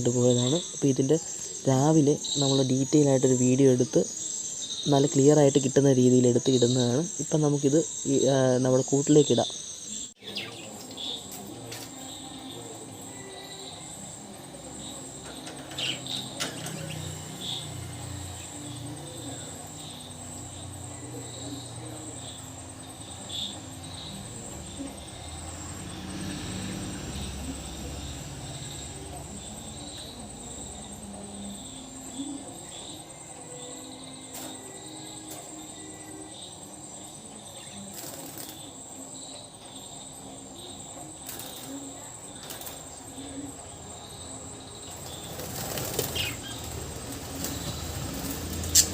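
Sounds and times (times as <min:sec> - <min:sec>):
lovebirds chirping: 0:00.0 - 0:48.9
birds fluttering wings: 0:34.3 - 0:35.6, 0:37.9 - 0:38.8, 0:41.2 - 0:43.3, 0:44.7 - 0:48.9.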